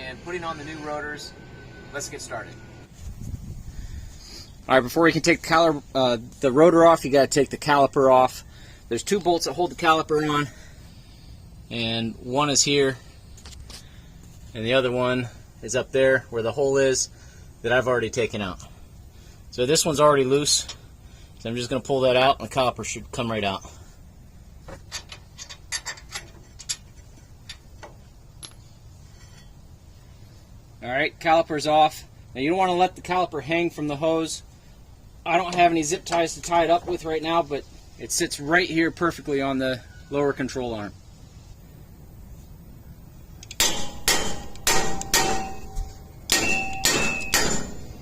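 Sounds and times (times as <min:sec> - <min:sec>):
wrench clanging on metal rotor: 0:24.8 - 0:29.6, 0:43.4 - 0:48.0.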